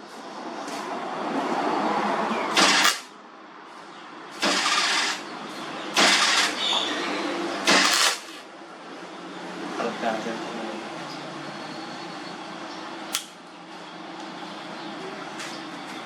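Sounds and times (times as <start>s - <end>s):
welder arc bursts: 4.4s - 5.3s, 6.0s - 6.6s, 7.7s - 8.4s.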